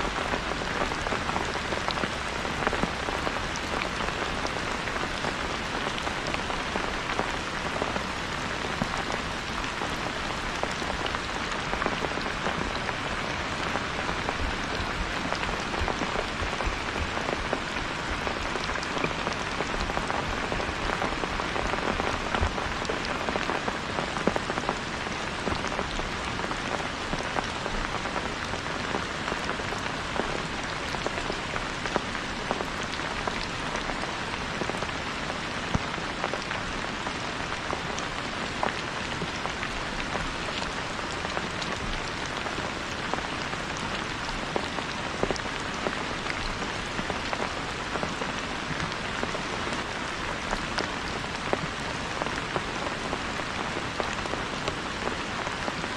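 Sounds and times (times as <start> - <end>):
steady rain falling: 0.0 - 55.9.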